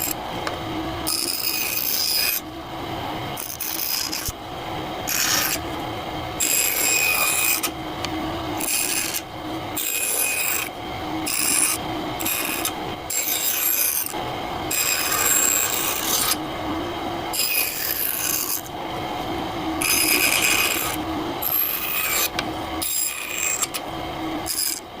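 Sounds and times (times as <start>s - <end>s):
abrasive tool scraping wood: 5.1s - 5.6s.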